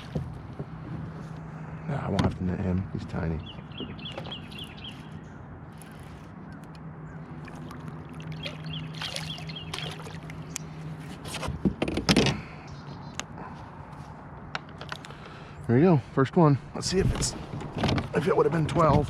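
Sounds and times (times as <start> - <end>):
water splashing: 7.2 - 10.6.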